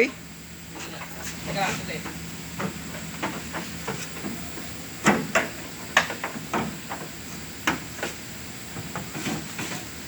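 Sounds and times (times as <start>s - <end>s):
sharp knocks: 2.0s - 8.2s.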